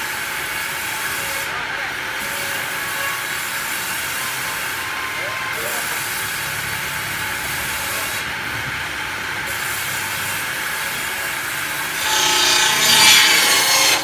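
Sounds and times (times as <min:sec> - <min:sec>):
saw cutting wood: 0:09.4 - 0:14.0.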